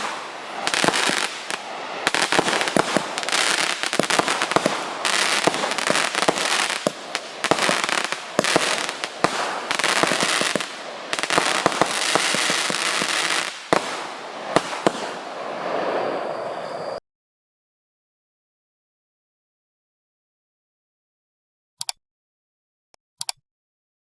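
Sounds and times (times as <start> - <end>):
firework bangs: 0.0 - 16.8
firework hiss and crackle: 0.0 - 17.0.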